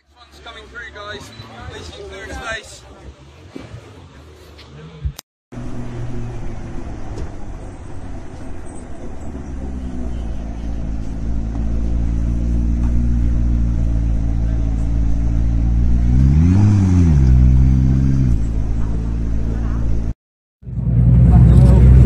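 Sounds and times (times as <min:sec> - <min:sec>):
car engine running: 0:05.5 - 0:22.0
engine rev: 0:05.5 - 0:22.0.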